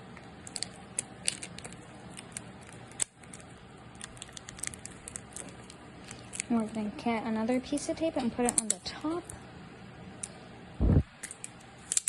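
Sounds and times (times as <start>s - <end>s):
sticky tape crackling: 0.0s - 9.4s, 11.1s - 12.0s.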